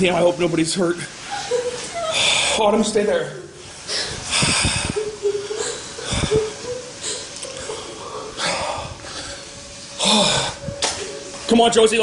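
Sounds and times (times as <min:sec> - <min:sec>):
girl crying with gasping sobs: 0:01.3 - 0:02.6, 0:04.8 - 0:08.0.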